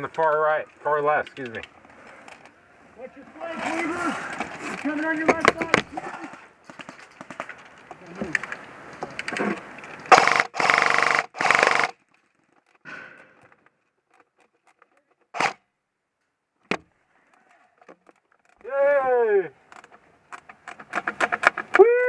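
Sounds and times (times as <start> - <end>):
faint rustling: 0.1 - 10.1
short sharp cracks: 9.3 - 13.4, 15.3 - 15.6
airsoft gun full-auto bursts: 10.1 - 12.0.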